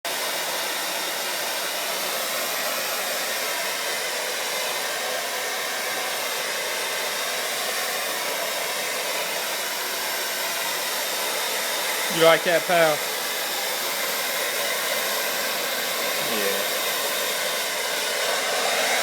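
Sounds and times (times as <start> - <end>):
hair dryer blowing: 0.1 - 19.0.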